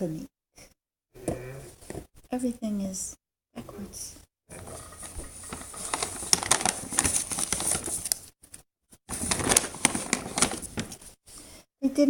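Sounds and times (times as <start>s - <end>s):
packaging crinkling and rustling: 4.5s - 11.2s.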